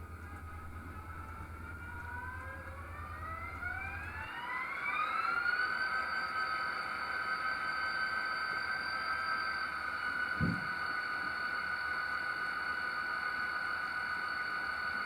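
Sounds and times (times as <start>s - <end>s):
low hum: 0.0s - 5.6s
model diesel engine startup whine: 0.0s - 15.0s.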